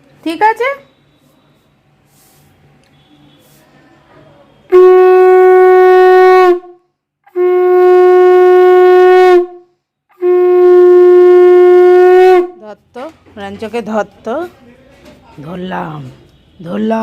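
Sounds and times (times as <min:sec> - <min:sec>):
conch shell blasts: 0:04.5 - 0:12.6.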